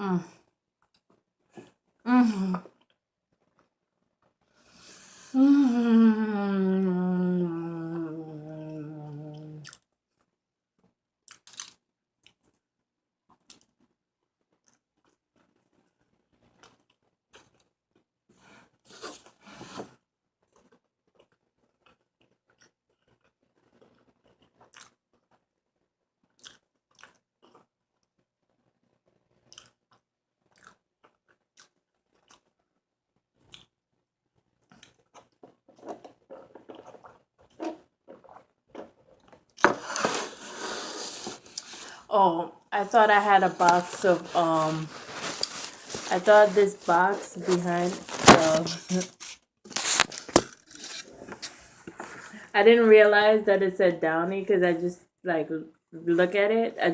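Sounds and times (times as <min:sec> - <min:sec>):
chewing and biting a burger: 0:20.4 - 0:28.2, 0:28.8 - 0:32.7, 0:34.5 - 0:39.6.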